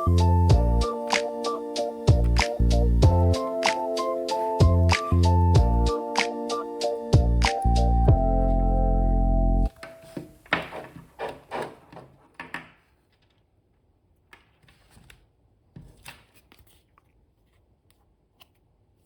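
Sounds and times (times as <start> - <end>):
rubbing and rustling: 9.9 - 13.4.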